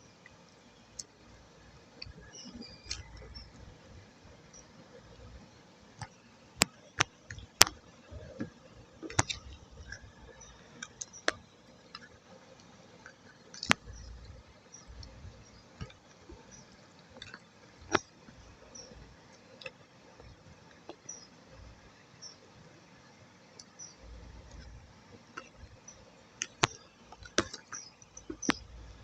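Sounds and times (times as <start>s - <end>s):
clay clicking and snapping: 6.0s - 10.2s, 13.0s - 14.3s, 17.1s - 18.1s, 26.4s - 28.7s.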